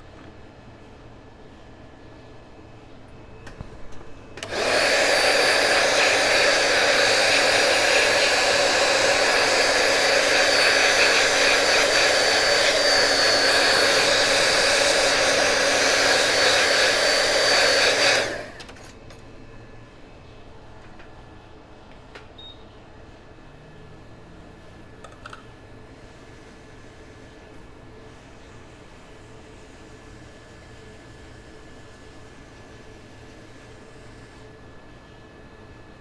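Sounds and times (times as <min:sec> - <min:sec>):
hot air station blowing: 0:04.4 - 0:18.9.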